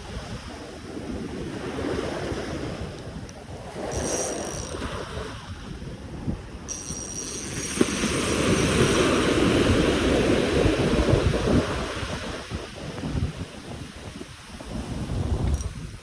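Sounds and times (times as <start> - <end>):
wind buffeting microphone: 0.0 - 16.0
water rushing and splashing: 7.5 - 15.6.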